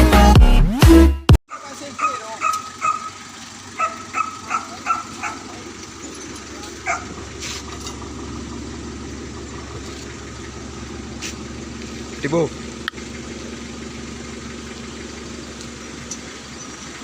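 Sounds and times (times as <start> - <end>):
dog barking: 1.5 - 5.7, 6.6 - 7.2
low engine hum: 1.8 - 17.0.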